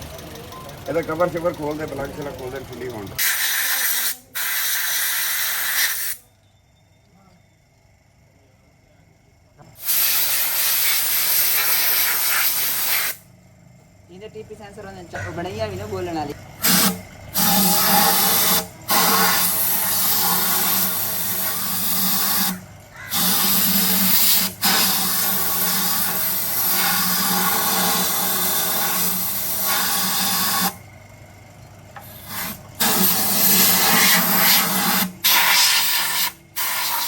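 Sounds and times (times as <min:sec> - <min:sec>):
compressed air hissing from blow gun: 0:03.2 - 0:06.2, 0:09.8 - 0:13.2, 0:16.6 - 0:30.8, 0:32.0 - 0:37.0.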